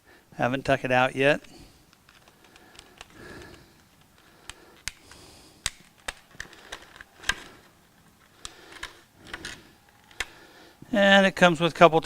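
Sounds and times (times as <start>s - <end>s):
plastic packaging clicks and taps: 1.9s - 7.5s, 8.2s - 10.4s
plastic crinkle: 2.0s - 10.3s.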